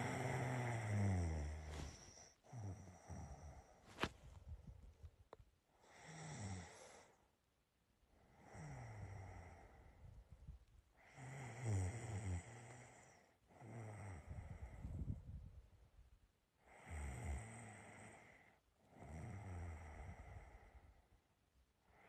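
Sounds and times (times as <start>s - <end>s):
person snoring: 0.0s - 3.6s.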